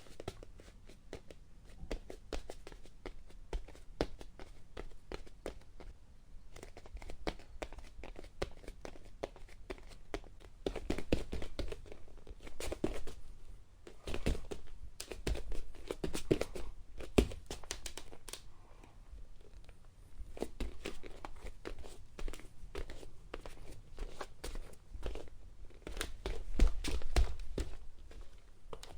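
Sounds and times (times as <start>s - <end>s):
bare feet on wooden floor: 20.2s - 28.9s.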